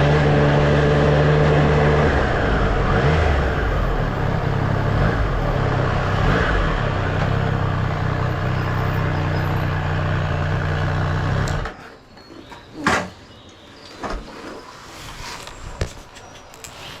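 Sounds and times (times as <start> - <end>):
motorcycle engine running: 0.0 - 11.7.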